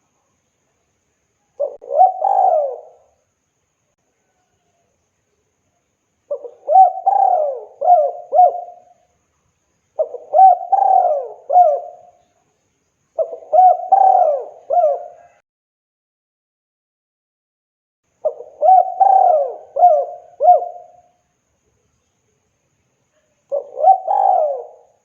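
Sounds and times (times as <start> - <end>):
dove cooing: 1.6 - 3.2, 6.3 - 9.0, 10.0 - 12.2, 13.2 - 15.4, 18.2 - 21.1, 23.5 - 25.0.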